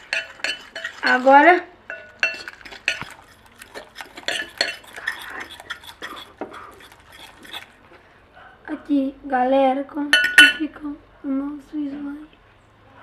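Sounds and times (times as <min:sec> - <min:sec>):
utensil stirring in container: 0:00.0 - 0:08.1.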